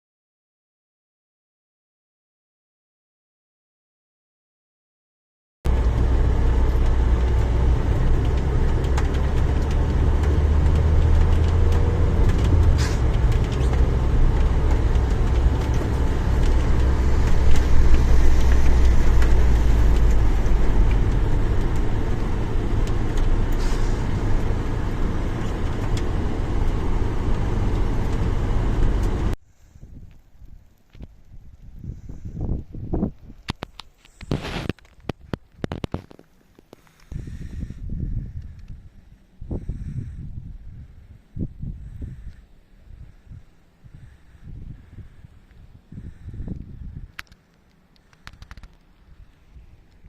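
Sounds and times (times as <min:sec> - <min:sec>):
heavy rain rushing: 0:05.7 - 0:29.4
wind rumble on microphone: 0:05.7 - 0:50.0.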